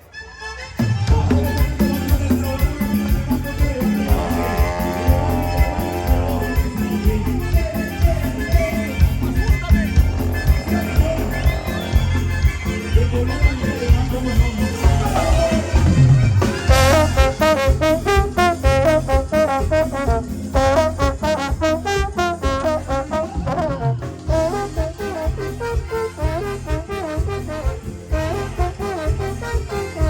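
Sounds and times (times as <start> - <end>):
horns playing quick runs: 0.0 - 30.0
pulsing bass line: 1.1 - 29.8.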